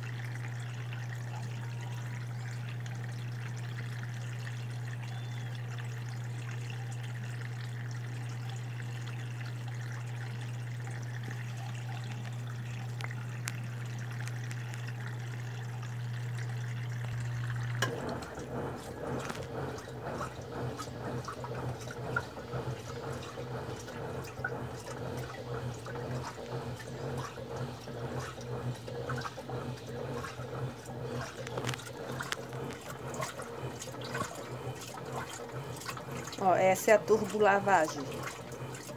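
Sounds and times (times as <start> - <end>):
motor humming: 0.0 - 38.9
washing machine filling with water: 0.0 - 38.9
water churning and sloshing: 0.0 - 38.9.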